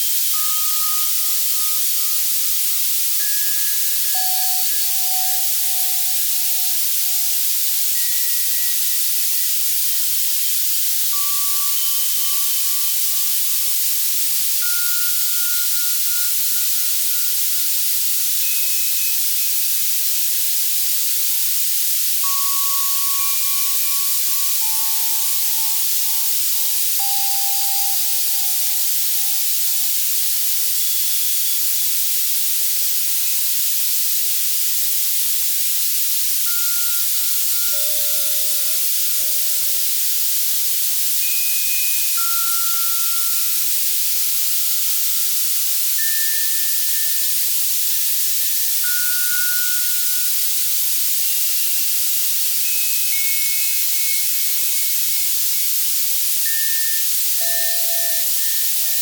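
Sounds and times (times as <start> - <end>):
white noise hiss: 0.0 - 59.0
synthesized bell tones: 22.2 - 30.0, 36.5 - 43.4, 57.4 - 59.0.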